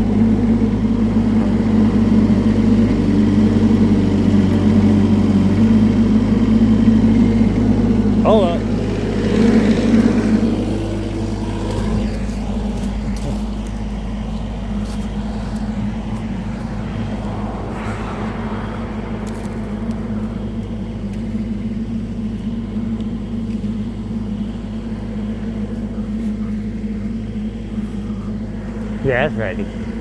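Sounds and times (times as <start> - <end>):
engine running steadily: 0.0 - 30.0
rush of higher noise: 15.4 - 22.3.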